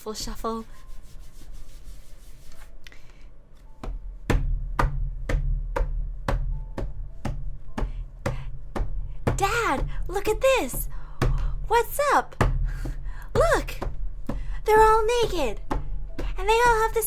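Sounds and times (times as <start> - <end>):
knocking beat over drone: 3.8 - 17.0.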